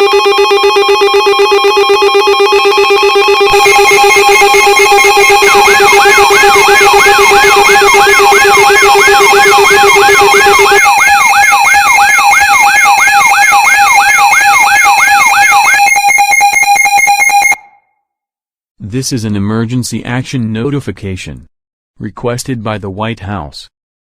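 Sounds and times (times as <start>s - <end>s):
steady electronic tones: 0.0s - 17.8s
whooping electronic alarm tone: 0.0s - 17.9s.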